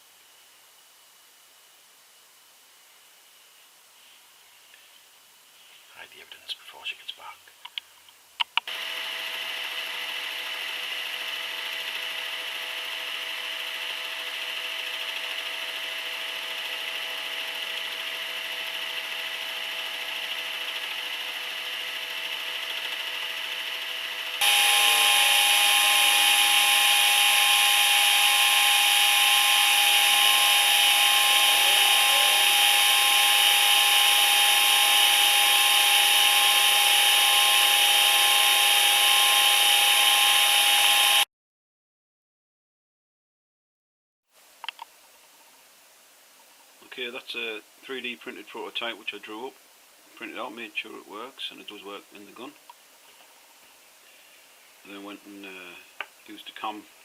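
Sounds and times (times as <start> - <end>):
milling machine cutting metal: 8.7 - 41.2
rising and falling whines: 24.4 - 41.2.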